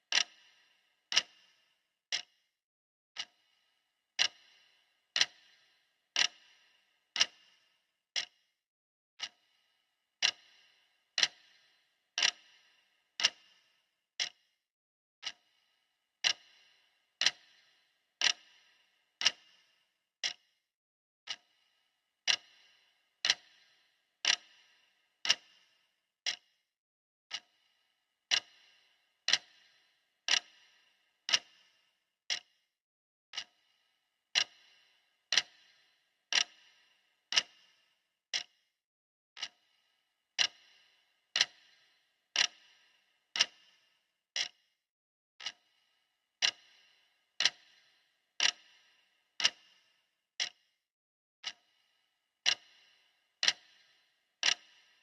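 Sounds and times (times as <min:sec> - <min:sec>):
clock ticking: 0:00.0 - 0:02.4, 0:03.2 - 0:03.6, 0:04.2 - 0:08.4, 0:09.2 - 0:09.6, 0:10.2 - 0:14.4, 0:15.2 - 0:15.6, 0:16.2 - 0:20.5, 0:21.3 - 0:26.5, 0:27.3 - 0:27.7, 0:28.3 - 0:32.6, 0:33.3 - 0:33.7, 0:34.3 - 0:38.6, 0:39.4 - 0:39.8, 0:40.4 - 0:44.7, 0:45.4 - 0:45.8, 0:46.4 - 0:50.7, 0:51.4 - 0:55.0.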